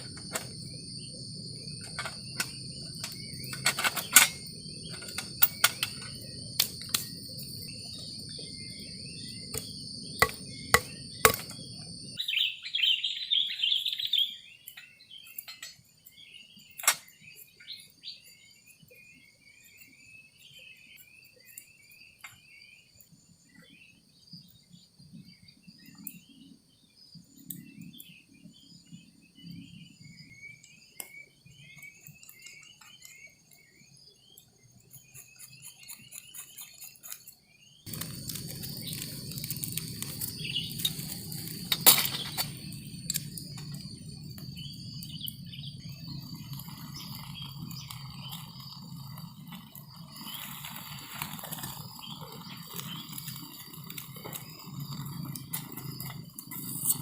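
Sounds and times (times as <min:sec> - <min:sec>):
chirping calls: 0:00.0 - 0:24.0, 0:37.8 - 0:57.0
high insect drone: 0:00.0 - 0:57.0.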